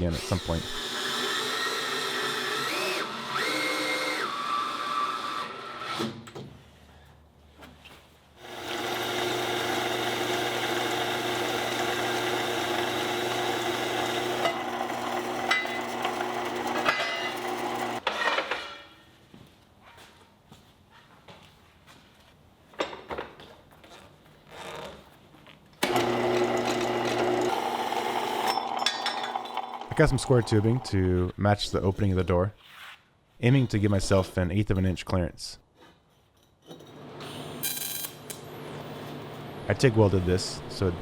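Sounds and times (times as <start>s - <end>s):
power drill running: 0.2s - 5.9s, 8.4s - 18.0s, 25.8s - 31.0s.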